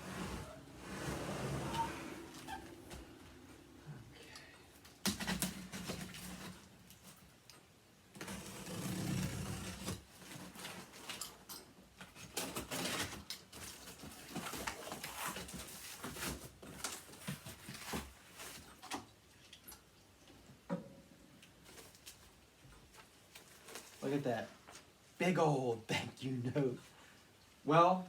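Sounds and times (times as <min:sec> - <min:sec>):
cardboard rustling and scraping: 0:00.0 - 0:03.8, 0:05.0 - 0:07.2, 0:08.2 - 0:11.2, 0:12.1 - 0:18.8, 0:21.6 - 0:24.9.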